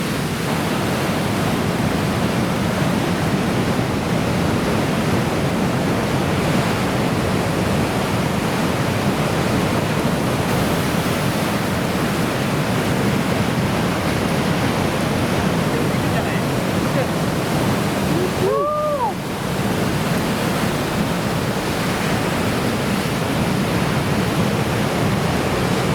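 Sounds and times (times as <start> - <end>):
heavy surf breaking: 7.8 - 25.9.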